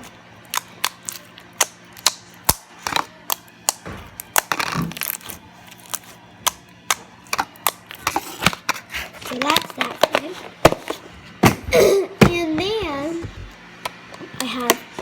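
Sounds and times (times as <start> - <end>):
slime squished by hand: 0.0 - 9.8.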